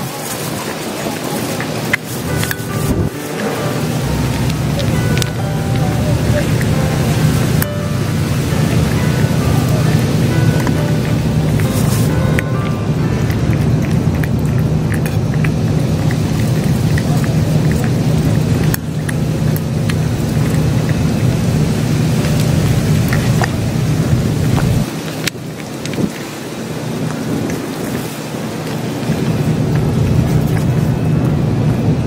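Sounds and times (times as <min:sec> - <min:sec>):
rain falling: 0:00.0 - 0:32.0
wind buffeting the microphone: 0:13.0 - 0:32.0.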